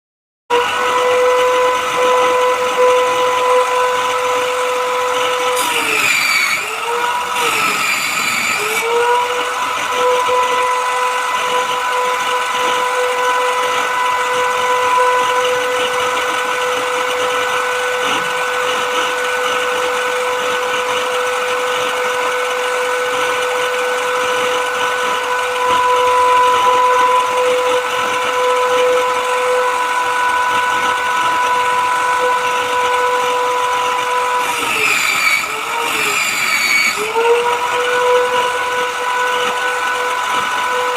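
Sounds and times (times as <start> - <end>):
power tool motor whining: 0.5 - 40.9.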